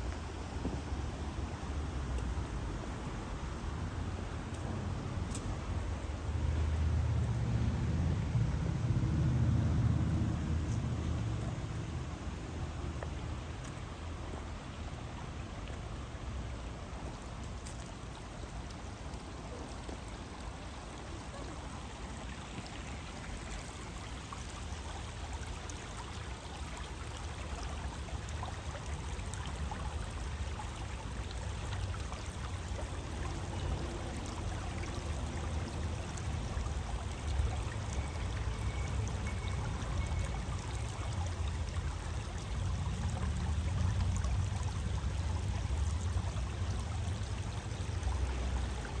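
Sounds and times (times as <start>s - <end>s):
low rumble: 6.8s - 12.4s
stream water flowing: 10.2s - 49.0s.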